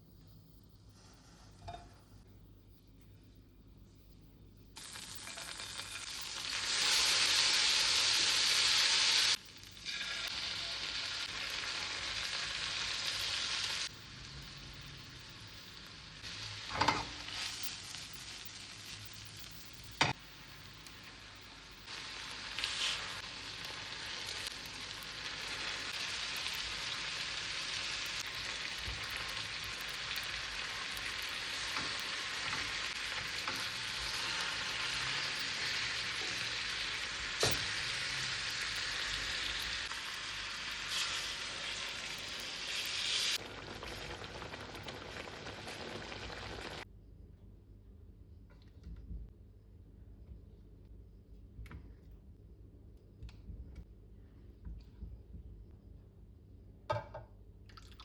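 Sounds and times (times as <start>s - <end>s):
food sizzling in a pan: 4.8s - 46.8s.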